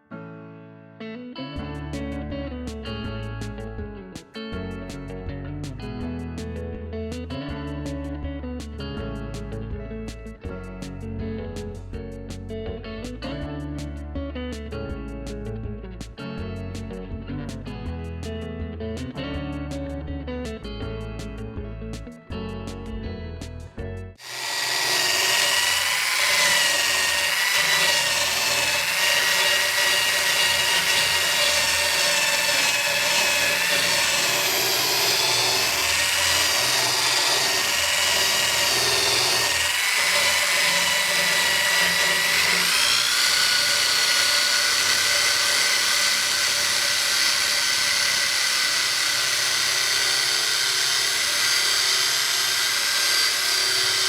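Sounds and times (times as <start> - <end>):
blender motor high whine: 24.2 - 54.0.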